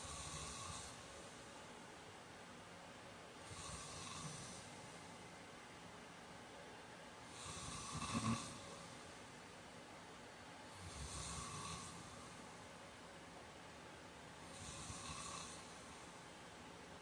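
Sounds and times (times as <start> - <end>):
man snoring: 0.0 - 1.0, 3.5 - 4.7, 7.4 - 8.7, 10.8 - 12.2, 14.5 - 15.8.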